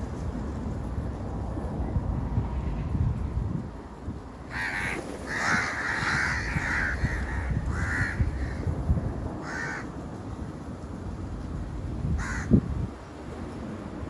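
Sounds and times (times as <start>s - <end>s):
bird harsh calls: 4.5s - 8.7s, 9.4s - 9.9s, 12.2s - 12.6s.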